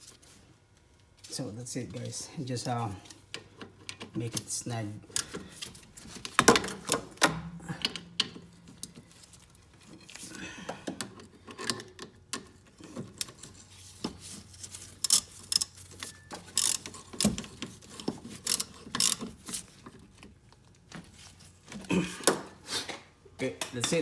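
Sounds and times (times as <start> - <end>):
metallic clicks and clanks of tools: 5.1 - 9.1, 10.8 - 14.1, 14.7 - 20.3.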